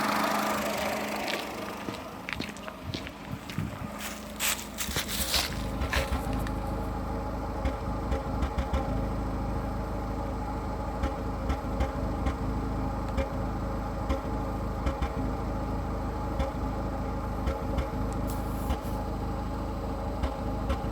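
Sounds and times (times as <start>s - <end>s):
car engine idling roughly: 0.0s - 20.9s
engine misfire coughs: 3.8s - 6.7s.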